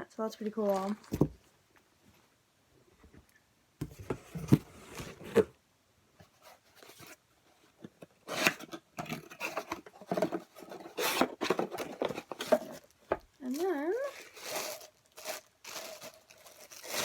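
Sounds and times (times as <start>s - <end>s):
fabric and packaging rustling: 8.2s - 17.0s.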